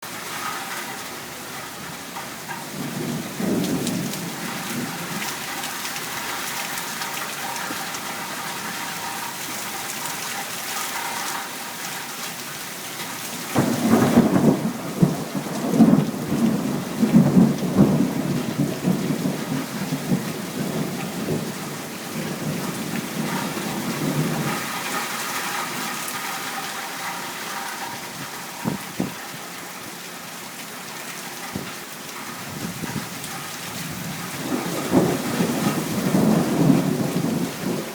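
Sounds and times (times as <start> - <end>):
steady rain falling: 0.0 - 37.9
thunder rumbling: 2.6 - 9.1, 13.5 - 26.4, 32.4 - 37.9.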